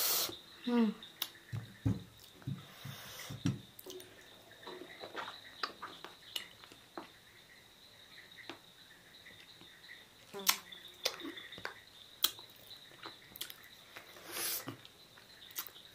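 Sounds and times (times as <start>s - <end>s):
soft thumps: 1.5s - 3.7s
mouth chewing clicks and smacks: 3.8s - 7.1s, 9.4s - 15.8s.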